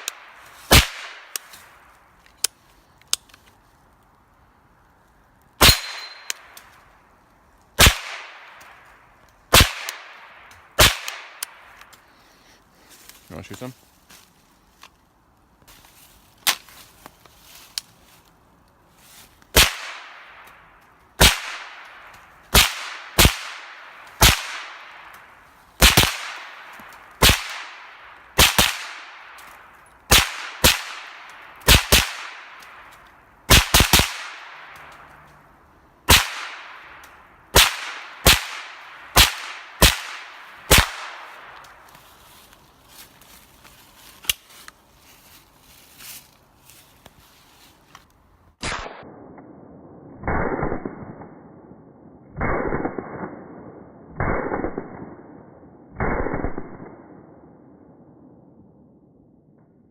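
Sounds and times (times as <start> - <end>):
suppressed gunshots: 5.6 - 6.3, 25.8 - 29.4, 30.1 - 32.6, 33.5 - 34.8, 36.1 - 41.6, 50.2 - 51.5, 52.4 - 53.6, 54.2 - 55.3, 56.0 - 57.2
gunshot echo: 5.6 - 6.4, 36.1 - 37.0, 37.6 - 41.6, 48.6 - 51.4, 52.4 - 53.6.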